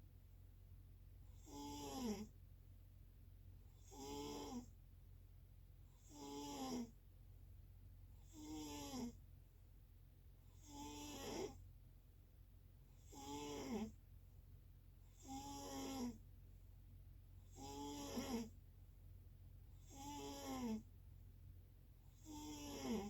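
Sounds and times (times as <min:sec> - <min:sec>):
person snoring: 0:01.4 - 0:02.3, 0:13.1 - 0:13.9, 0:17.6 - 0:18.5, 0:19.9 - 0:20.8, 0:22.2 - 0:23.0.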